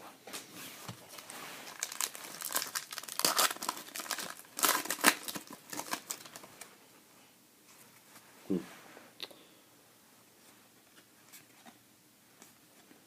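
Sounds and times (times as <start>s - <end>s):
wrapper tearing and crinkling: 1.1s - 6.5s.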